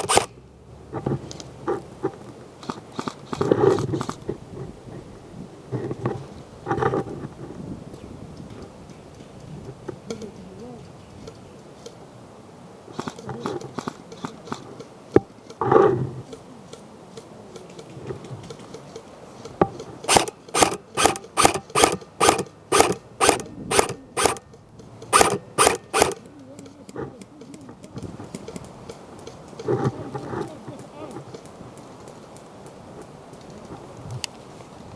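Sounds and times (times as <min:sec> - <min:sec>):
sharp click: 0:00.0 - 0:00.3, 0:20.1 - 0:26.2
small clicks: 0:00.0 - 0:00.3, 0:02.6 - 0:04.2, 0:16.3 - 0:30.0.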